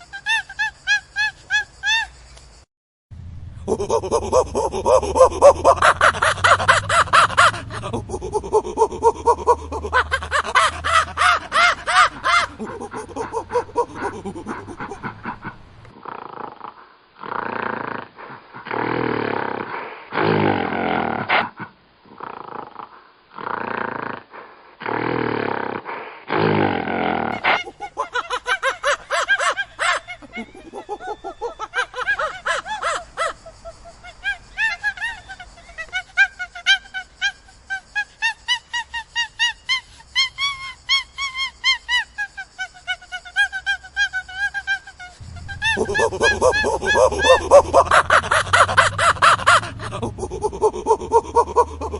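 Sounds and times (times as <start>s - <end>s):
monkey calling loudly: 3.6s - 15.6s, 27.4s - 51.9s.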